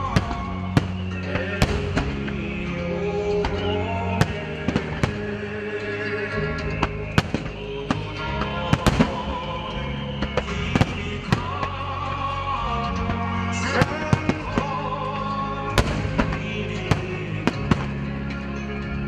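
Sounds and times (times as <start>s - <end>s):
firework shells bursting: 0.0s - 2.8s, 3.5s - 5.5s, 6.6s - 9.6s, 10.2s - 11.9s, 12.9s - 18.4s
music with sustained chords: 0.0s - 19.0s.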